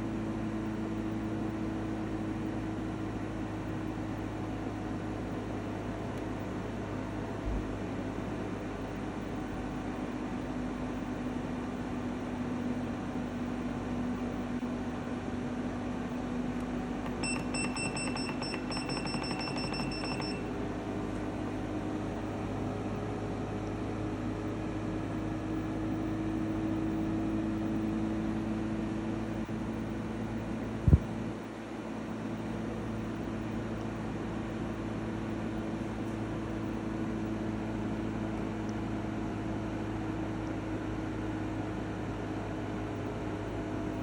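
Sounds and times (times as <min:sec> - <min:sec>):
air conditioner droning hum: 0:00.0 - 0:44.0
short high electronic beeps: 0:17.0 - 0:20.5.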